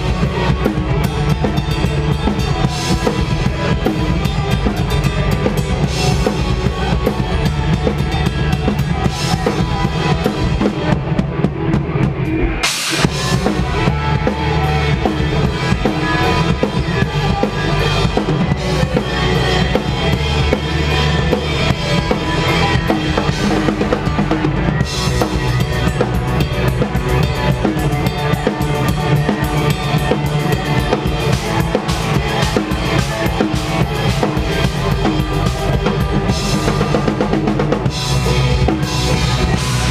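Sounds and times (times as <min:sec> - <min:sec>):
loud rock band playing: 0:00.0 - 0:39.9
pounding drum kit: 0:00.0 - 0:39.9.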